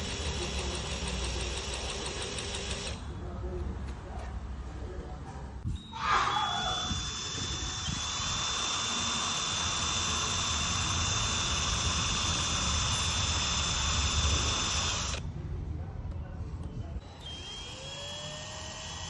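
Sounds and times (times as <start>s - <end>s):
electric drill whining: 0.0s - 3.0s, 6.4s - 15.2s, 17.0s - 19.0s.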